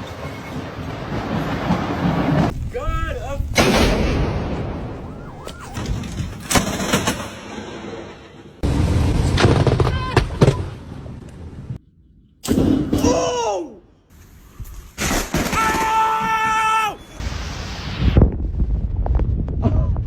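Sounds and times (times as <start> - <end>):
thunder cracks and rumbles: 0.9 - 11.2.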